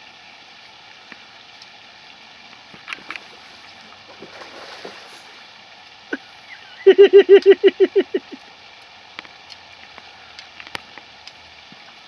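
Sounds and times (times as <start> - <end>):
person laughing: 6.2 - 8.4.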